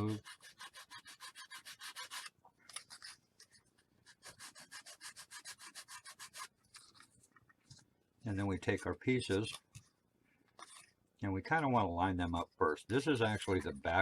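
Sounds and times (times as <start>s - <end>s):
sandpaper rubbing on wood: 0.0s - 2.3s, 4.2s - 6.5s.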